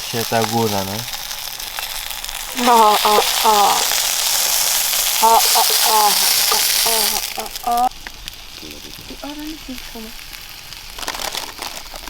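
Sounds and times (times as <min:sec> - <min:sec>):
sausages sizzling in a pan: 0:00.0 - 0:12.0
high-pitched voice: 0:02.5 - 0:03.9, 0:05.2 - 0:07.9.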